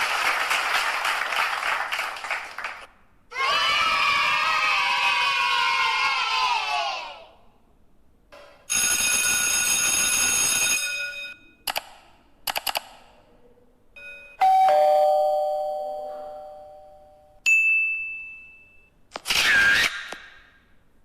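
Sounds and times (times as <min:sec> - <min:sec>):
quick clicks: 0:11.7 - 0:13.0
bright ringing tone: 0:14.0 - 0:18.9.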